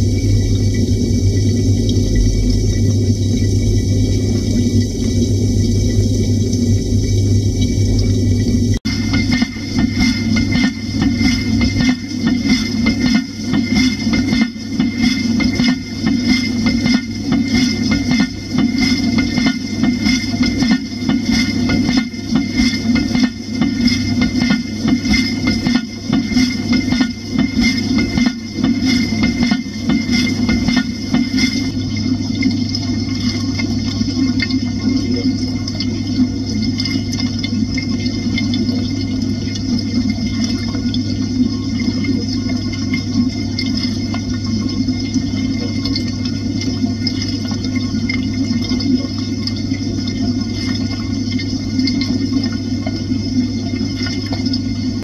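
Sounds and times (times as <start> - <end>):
pump hum: 0.0 - 55.0
dishwasher water spraying: 8.7 - 31.8.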